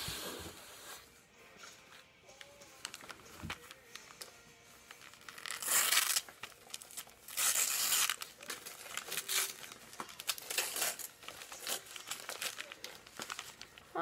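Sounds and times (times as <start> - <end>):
paper wrapping crinkling: 2.4 - 14.0
paper ripping: 4.9 - 14.0.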